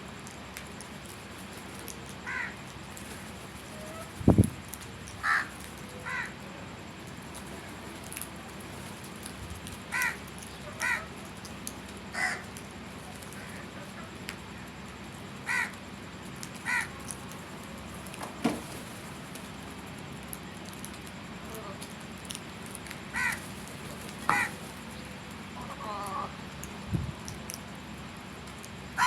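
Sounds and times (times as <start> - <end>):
crow cawing: 2.2 - 2.6, 5.2 - 6.4, 9.9 - 10.2, 10.8 - 11.1, 12.1 - 12.5, 15.4 - 15.8, 16.6 - 17.0, 23.1 - 23.5, 24.2 - 24.6.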